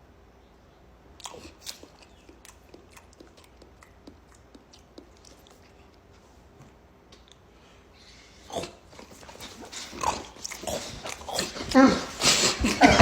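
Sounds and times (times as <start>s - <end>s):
wet mouth smacking noises: 1.2s - 6.2s.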